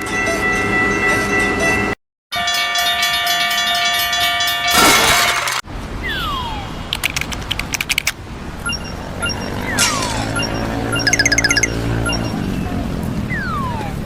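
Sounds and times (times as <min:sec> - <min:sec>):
falling whistle glide: 0:06.0 - 0:06.8.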